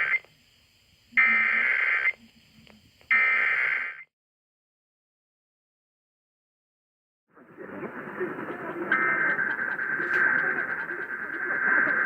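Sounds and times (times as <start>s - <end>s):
warbling digital data tones: 8.4s - 12.0s.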